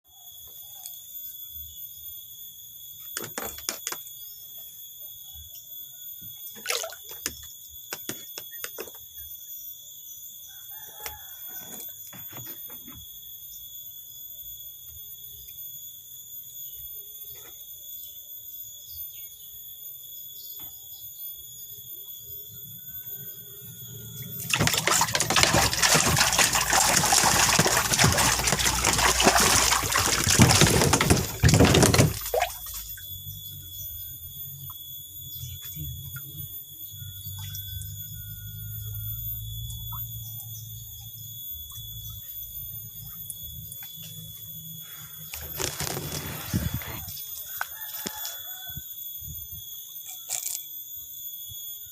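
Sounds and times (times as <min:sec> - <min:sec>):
rush of splashing water: 0:24.5 - 0:32.8.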